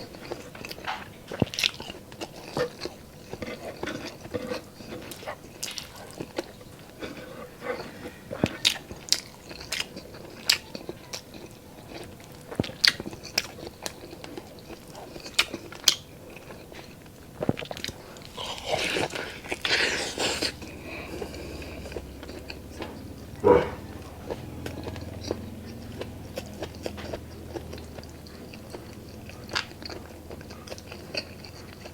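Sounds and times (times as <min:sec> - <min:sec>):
chewing with wet mouth clicks: 0:00.0 - 0:31.9.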